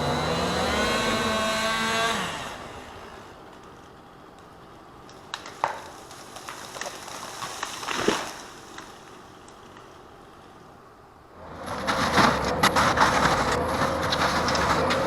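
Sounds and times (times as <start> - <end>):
wood and brush crackling: 0.0 - 15.0
heavy machinery engine clattering: 11.4 - 15.0.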